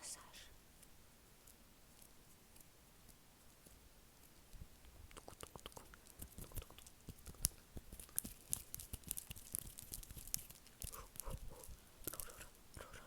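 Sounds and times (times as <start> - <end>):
wet mouth clicks and pops: 5.0 - 12.9.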